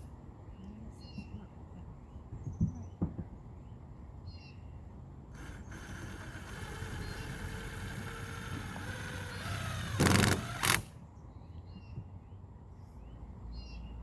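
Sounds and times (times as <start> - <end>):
cordless drill driving screws: 5.4 - 11.0.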